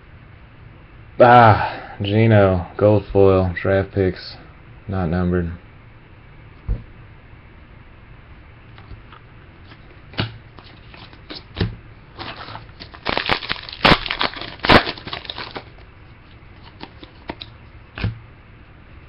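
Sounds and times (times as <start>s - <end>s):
cards being handled: 9.6s - 18.1s
wrapper crinkling: 12.2s - 15.8s.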